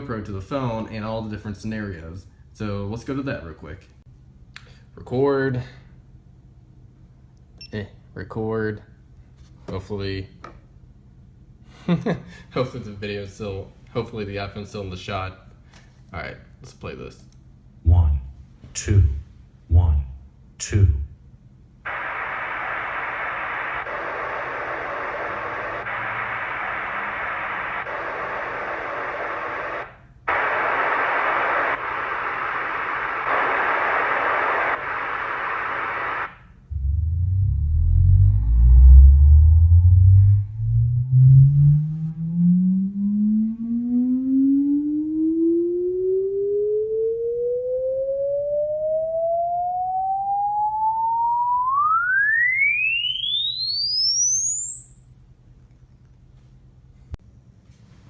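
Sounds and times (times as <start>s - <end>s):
rising sine tone sweep: 21.9s - 56.3s.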